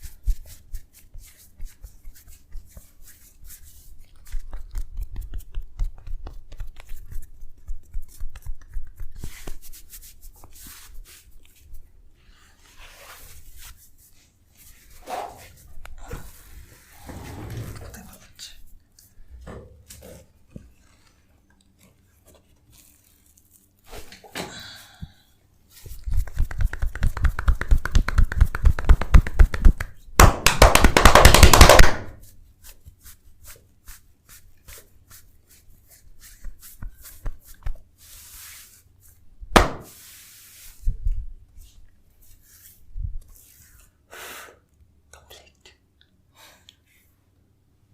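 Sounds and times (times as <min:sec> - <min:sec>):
hand strikes on the body: 0:39.5 - 0:39.9.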